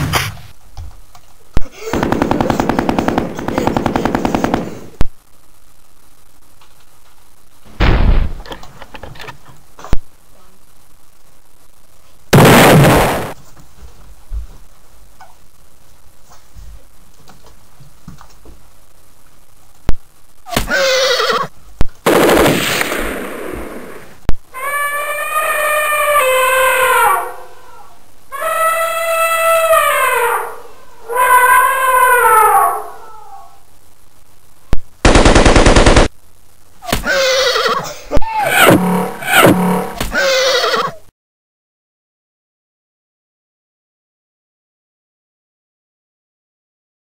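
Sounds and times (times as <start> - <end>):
machine-gun burst: 1.8 - 5.0, 22.1 - 24.2, 35.0 - 36.1
short pitched cry: 37.0 - 41.0
harsh pitched sound: 38.4 - 40.0.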